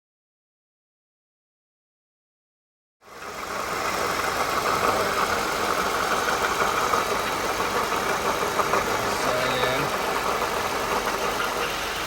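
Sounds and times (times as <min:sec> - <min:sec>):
car engine running rough: 0:03.0 - 0:12.0.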